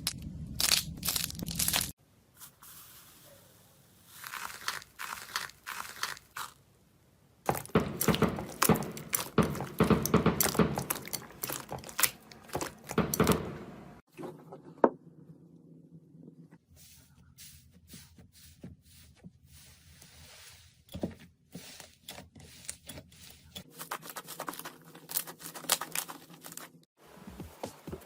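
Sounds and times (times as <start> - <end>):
slime crackling and popping: 0.0 - 2.0, 4.2 - 6.5.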